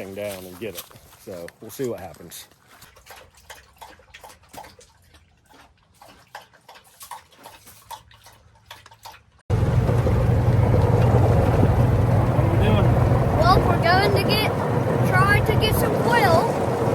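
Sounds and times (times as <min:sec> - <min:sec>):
utility vehicle engine driving: 0:09.5 - 0:16.9.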